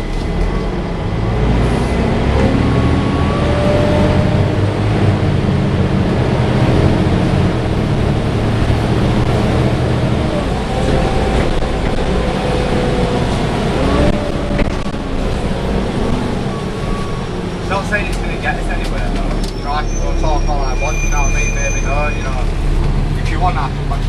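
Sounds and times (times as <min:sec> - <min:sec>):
bus cooling fan whirring: 0:00.0 - 0:19.5
steady low drone: 0:00.0 - 0:21.0.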